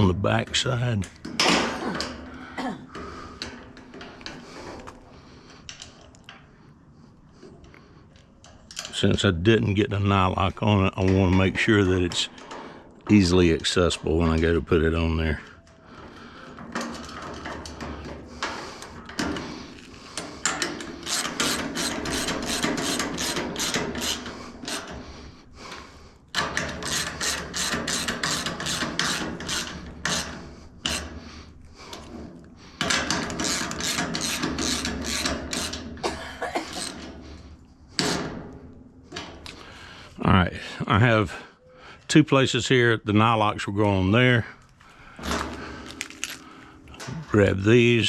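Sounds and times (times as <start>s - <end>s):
ratchet wrench rasping: 20.4s - 25.0s, 26.6s - 31.1s, 32.8s - 35.9s, 36.7s - 37.1s.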